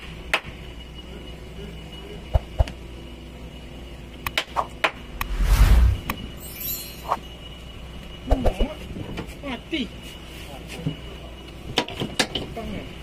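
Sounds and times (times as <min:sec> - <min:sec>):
short loud rush of noise: 0:05.1 - 0:06.8.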